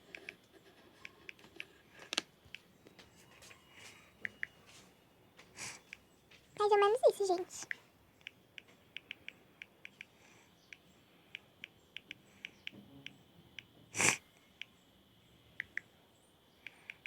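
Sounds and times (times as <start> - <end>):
person sniffing: 14.0 - 14.2.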